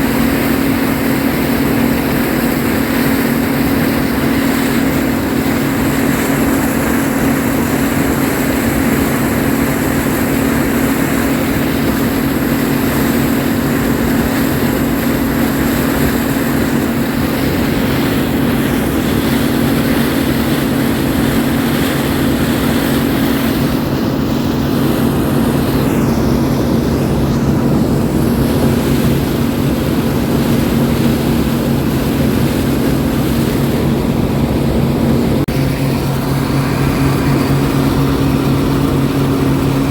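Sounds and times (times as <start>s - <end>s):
harvester engine droning: 0.0s - 39.9s.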